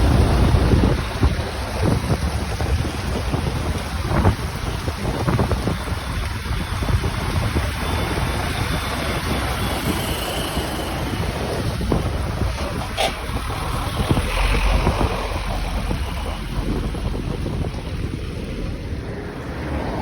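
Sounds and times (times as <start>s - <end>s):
wind buffeting microphone: 0.0s - 20.0s
brief high squeak: 12.6s - 13.9s.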